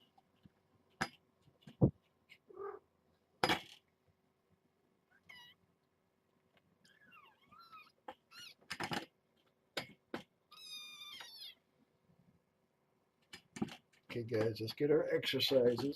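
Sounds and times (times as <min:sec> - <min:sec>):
kitten mewing: 0:02.5 - 0:02.8.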